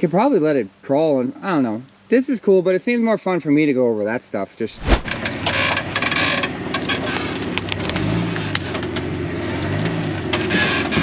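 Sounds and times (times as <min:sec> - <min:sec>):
steady rushing noise: 0:04.7 - 0:05.2
off-road vehicle engine: 0:05.3 - 0:11.0.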